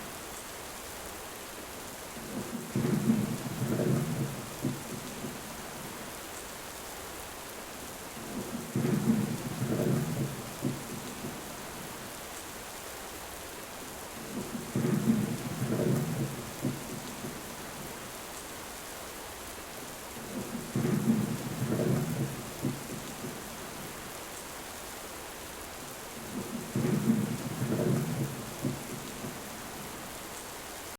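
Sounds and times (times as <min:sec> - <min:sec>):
steady rain falling: 0:00.0 - 0:30.9
thunder rumbling: 0:08.3 - 0:11.4, 0:14.3 - 0:17.7, 0:20.2 - 0:23.5, 0:26.2 - 0:29.9.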